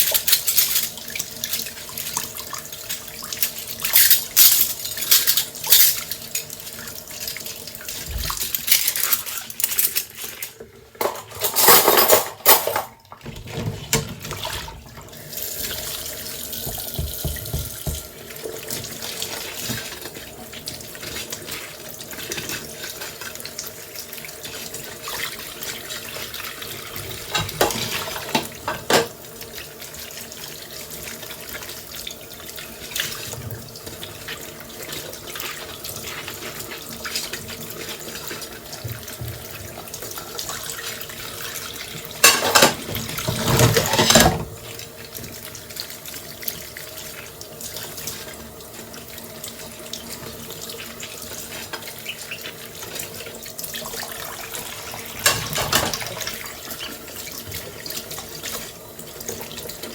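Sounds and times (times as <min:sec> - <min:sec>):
tap water running into sink: 0:00.0 - 0:59.9
dishes clinking: 0:11.0 - 0:13.0, 0:27.3 - 0:29.1, 0:42.2 - 0:44.6, 0:55.2 - 0:56.2.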